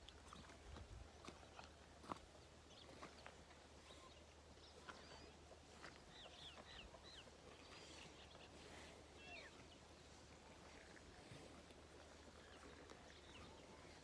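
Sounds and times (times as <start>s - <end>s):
faint bird chirps: 3.8s - 10.2s.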